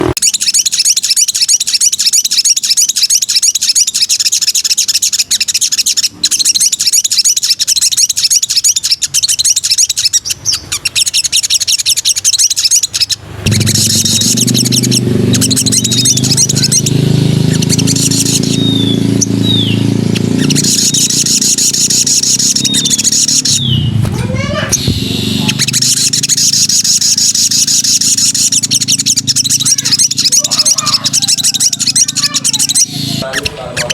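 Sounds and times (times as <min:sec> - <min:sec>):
songbird twittering: 0:00.0 - 0:33.9
steady low hum: 0:13.2 - 0:33.9
short down-slurred whistles: 0:13.5 - 0:16.8.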